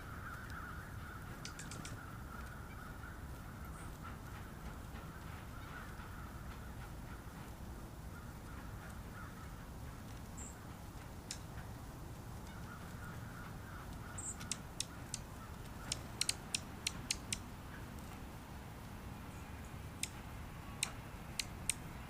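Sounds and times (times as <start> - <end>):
distant crows cawing: 0.0 - 11.4, 12.4 - 18.2
high bird chirps: 1.4 - 2.0
sharp clicks: 14.4 - 17.4, 20.0 - 20.2, 20.8 - 22.0.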